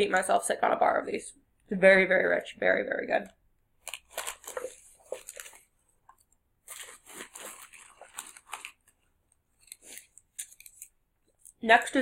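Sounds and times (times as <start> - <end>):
plastic wrapper crinkling: 3.8 - 11.6.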